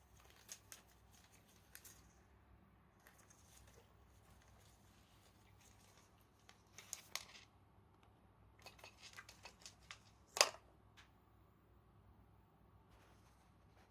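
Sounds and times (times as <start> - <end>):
cat toy crinkly rustling: 0.0 - 2.3, 2.9 - 7.5, 8.6 - 10.4.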